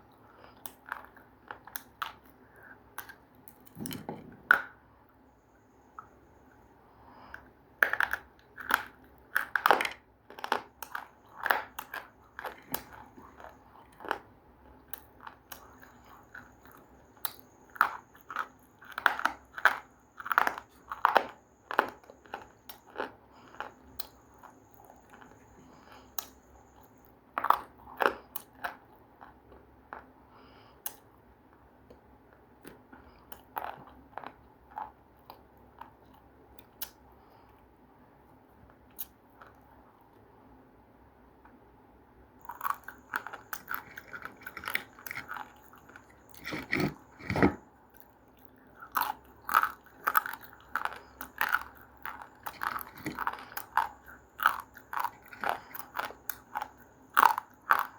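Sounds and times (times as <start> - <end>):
crunchy food biting and chewing: 7.3 - 30.1, 42.4 - 57.9.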